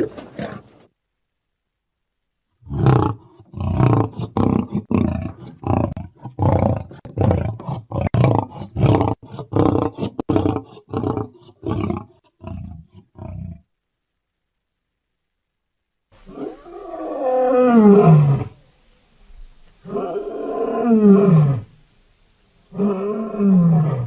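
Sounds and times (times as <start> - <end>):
lion roaring: 2.6 - 13.6, 16.2 - 18.6, 19.8 - 21.7, 22.7 - 24.0.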